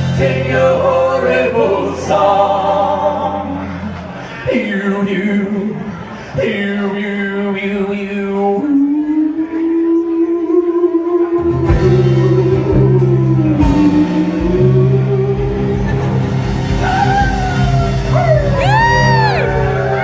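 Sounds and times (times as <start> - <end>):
bass and drums: 0.0 - 2.1, 11.4 - 20.0
guitar: 0.0 - 4.6, 7.7 - 20.0
person singing long notes: 6.8 - 20.0.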